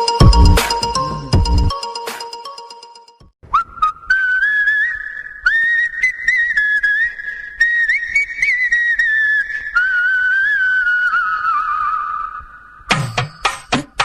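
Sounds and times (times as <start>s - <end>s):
whistled melody: 3.5s - 9.1s.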